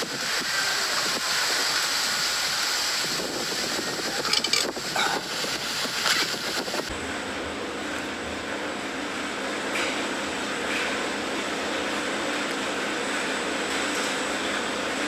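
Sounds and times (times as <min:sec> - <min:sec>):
steady hiss: 0:00.0 - 0:06.9.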